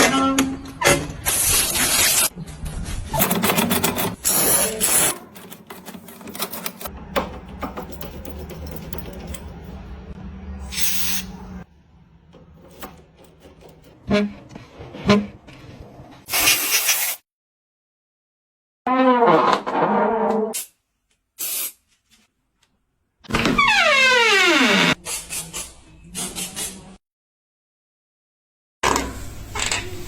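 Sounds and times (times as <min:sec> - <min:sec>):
lock and handle clicking: 0:03.2 - 0:09.9, 0:12.4 - 0:14.0.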